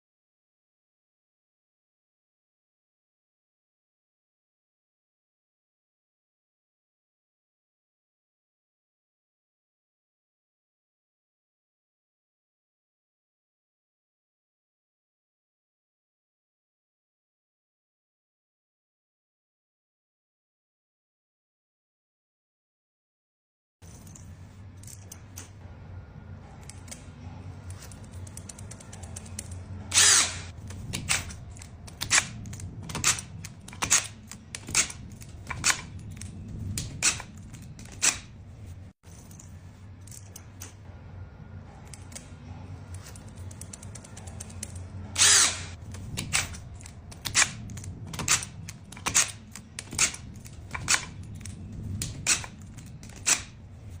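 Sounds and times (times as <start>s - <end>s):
power tool humming: 29.9s - 30.5s, 45.2s - 45.7s.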